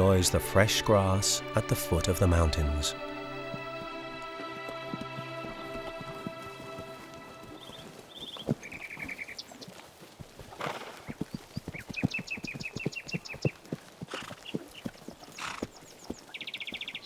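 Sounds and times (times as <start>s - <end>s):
horses breathing: 0.0s - 17.0s
horse hoofbeats: 1.6s - 17.0s
small bird singing: 5.7s - 9.8s, 11.0s - 17.0s.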